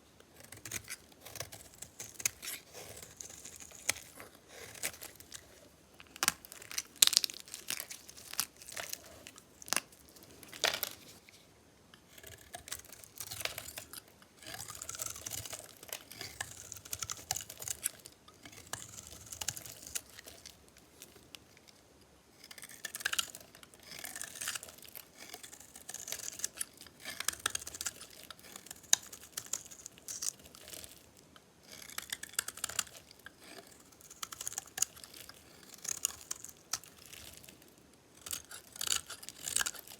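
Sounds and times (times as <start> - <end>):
knife cutting dry soap: 0.3 - 11.2, 12.2 - 21.2, 22.5 - 31.0, 38.2 - 39.9.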